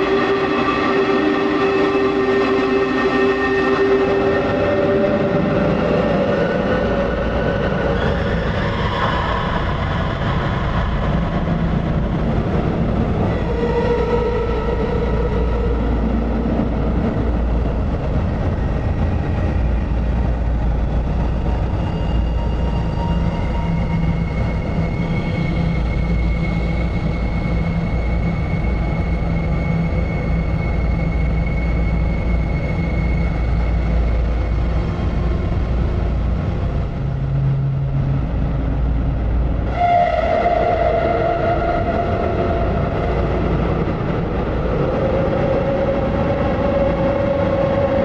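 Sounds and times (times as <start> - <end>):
noisy synthesizer drone: 0.0 - 8.6.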